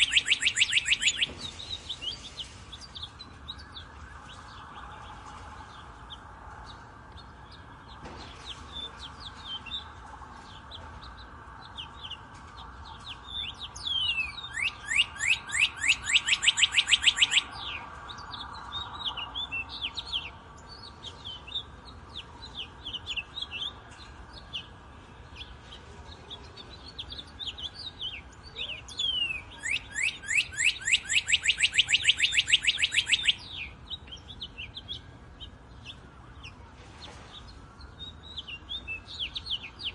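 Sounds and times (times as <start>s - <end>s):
bird song quickening into trill: 0.0s - 3.9s, 13.2s - 21.7s, 27.1s - 35.1s
wild birds chirping: 0.0s - 39.9s.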